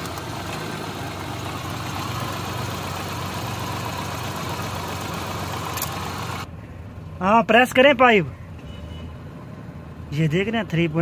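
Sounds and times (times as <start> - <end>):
car engine idling with misfire: 0.0 - 7.0.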